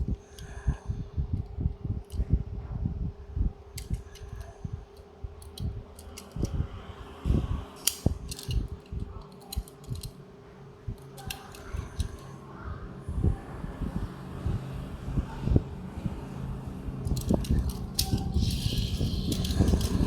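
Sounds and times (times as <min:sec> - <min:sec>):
steady low hum: 0:00.0 - 0:20.0
toy cars clicking and knocking: 0:05.4 - 0:06.5, 0:07.8 - 0:10.2, 0:11.0 - 0:12.3, 0:17.0 - 0:20.0.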